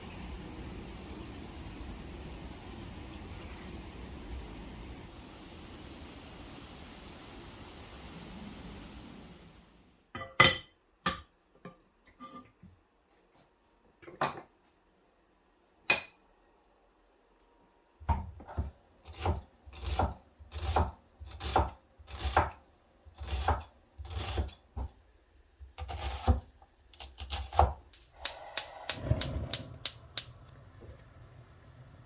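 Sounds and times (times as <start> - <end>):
knife chopping on wooden board: 25.8 - 27.8.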